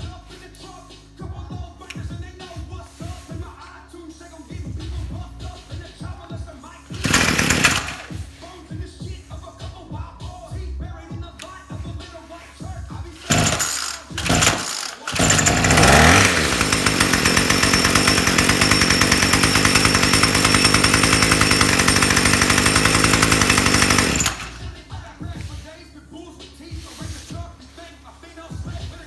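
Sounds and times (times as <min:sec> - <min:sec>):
starter cord pulls: 0:06.9 - 0:08.2, 0:13.2 - 0:25.5
string trimmer engine revving: 0:06.9 - 0:08.3, 0:13.1 - 0:25.6.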